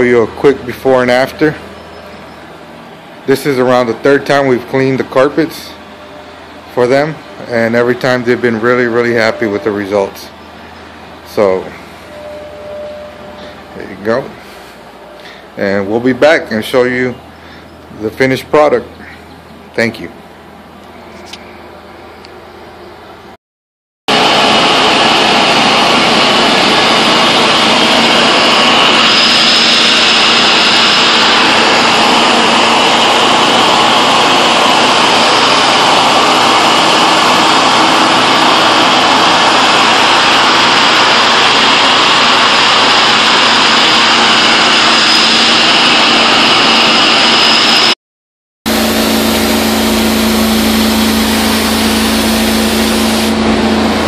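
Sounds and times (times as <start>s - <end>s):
high whine: 0.0s - 22.9s, 24.1s - 48.0s, 48.7s - 54.0s
deeper steady hum: 0.0s - 23.0s, 48.7s - 54.0s
carpet extractor suction and spray: 24.1s - 48.0s, 48.7s - 54.0s.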